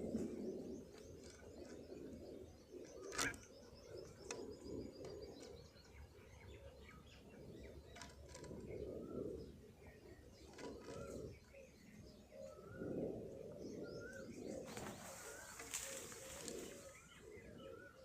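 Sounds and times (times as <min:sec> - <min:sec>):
faint bird chirps: 0:00.0 - 0:18.0.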